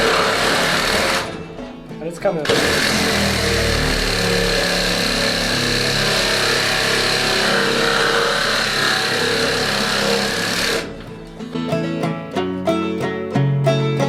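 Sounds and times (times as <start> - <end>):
power tool motor whine: 0.0 - 1.5, 2.5 - 11.0.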